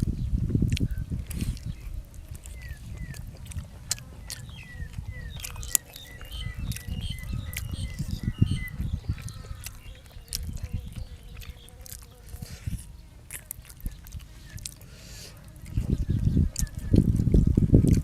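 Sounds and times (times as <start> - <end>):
bird chirping: 0.0 - 18.0
chewing and mouth noises: 0.0 - 18.0.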